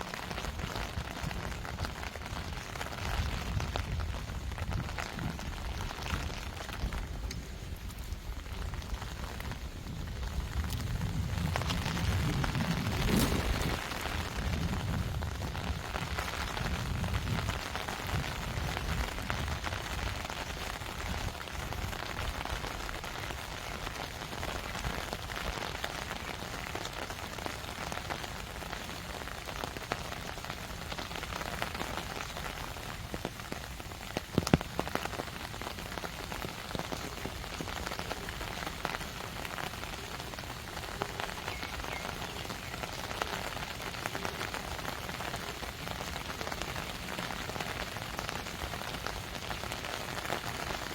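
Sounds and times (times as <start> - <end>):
rain pattering: 0.0 - 50.9
sharp clatter of hits: 13.0 - 14.0.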